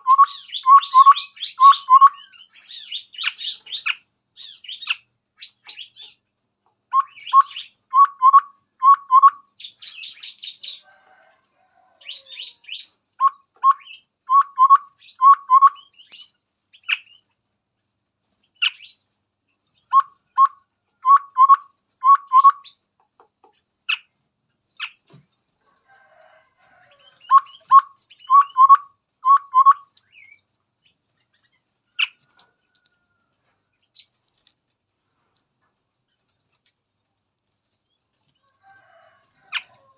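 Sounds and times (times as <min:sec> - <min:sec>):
bird singing low notes: 0:00.0 - 0:03.9, 0:27.2 - 0:30.4
bird chirps and chatter: 0:00.0 - 0:10.9, 0:12.0 - 0:25.6, 0:26.2 - 0:39.8.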